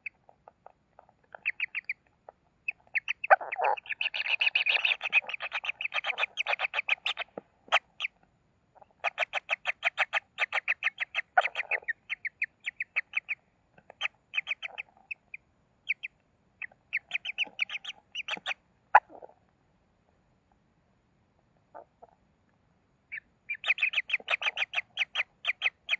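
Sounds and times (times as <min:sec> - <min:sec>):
kingfishers calling: 0:01.4 - 0:02.0, 0:02.6 - 0:08.1, 0:17.0 - 0:18.6.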